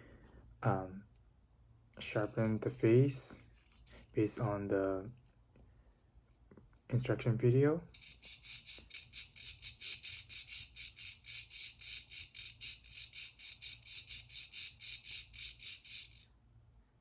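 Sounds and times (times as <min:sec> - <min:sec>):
sharpening stone scraping steel: 0:07.9 - 0:16.3.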